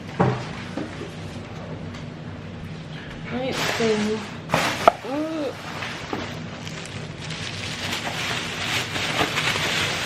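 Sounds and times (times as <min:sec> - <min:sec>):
shopping bag rustling: 0:03.5 - 0:10.0.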